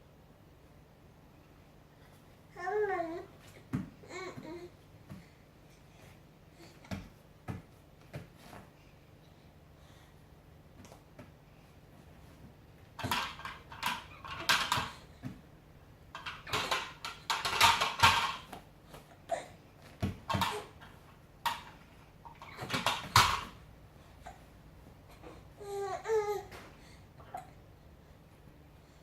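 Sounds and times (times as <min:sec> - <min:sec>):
hard objects clattering: 0:13.0 - 0:15.0, 0:16.1 - 0:18.5.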